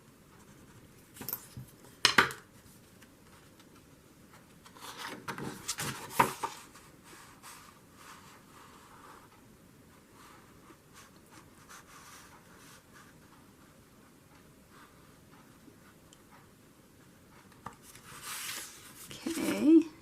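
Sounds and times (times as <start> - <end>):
paper rustling: 17.7 - 19.6.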